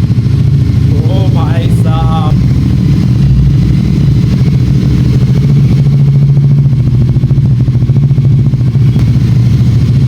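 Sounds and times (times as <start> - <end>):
motorcycle engine idling: 0.0 - 10.0.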